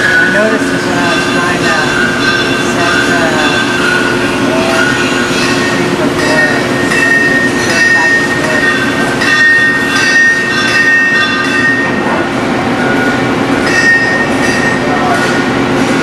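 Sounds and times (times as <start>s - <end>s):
milling machine cutting metal: 0.0s - 16.0s.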